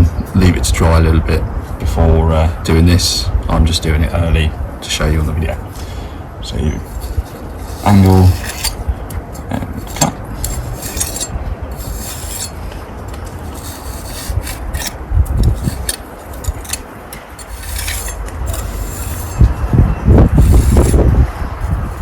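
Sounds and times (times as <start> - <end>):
trowel scraping mortar: 6.8 - 8.8, 9.4 - 19.5, 20.2 - 21.1.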